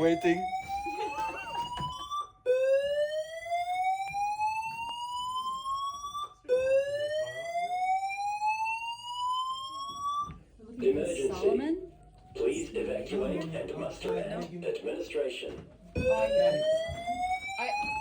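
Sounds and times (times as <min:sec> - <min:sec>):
fire alarm whoop: 0:00.0 - 0:10.3, 0:16.1 - 0:18.0.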